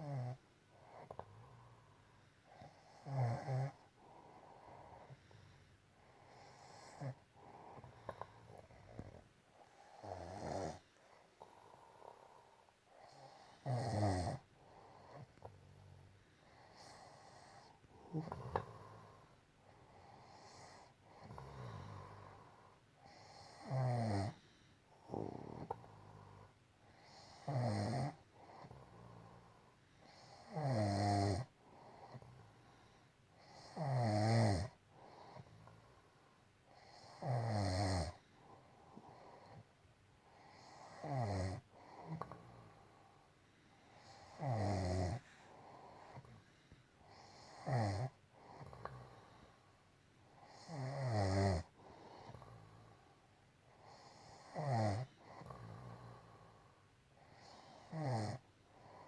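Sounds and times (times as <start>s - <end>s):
quiet breathing: 0.0s - 59.0s
woman snoring: 2.6s - 3.9s, 6.3s - 15.5s, 16.6s - 19.3s, 20.2s - 24.4s, 25.0s - 29.4s, 30.1s - 32.3s, 33.4s - 34.8s, 36.8s - 38.2s, 40.3s - 42.8s, 44.0s - 45.4s, 47.1s - 49.2s, 50.4s - 52.9s, 53.8s - 56.4s, 57.3s - 58.4s.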